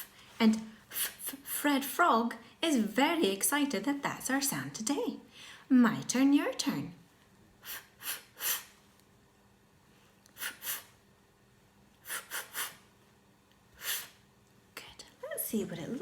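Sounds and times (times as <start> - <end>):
person making hissy f sounds: 7.6 - 8.8, 10.4 - 10.9, 12.0 - 12.8, 13.8 - 14.2.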